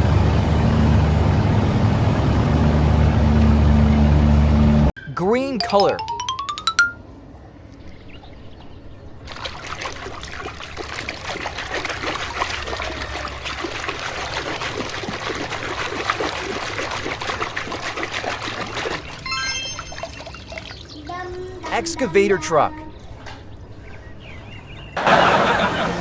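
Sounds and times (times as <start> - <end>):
water pouring and trickling: 9.2 - 21.7.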